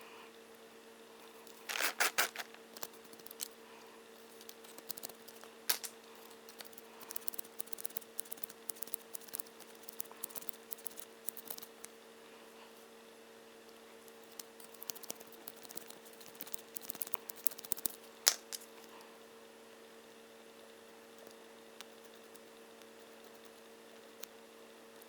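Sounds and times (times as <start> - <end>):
steady electrical hum: 0.0 - 25.0
light rapid ticks: 4.4 - 5.5, 6.2 - 11.9, 14.3 - 18.0
metal parts clicking and scraping: 5.7 - 6.8.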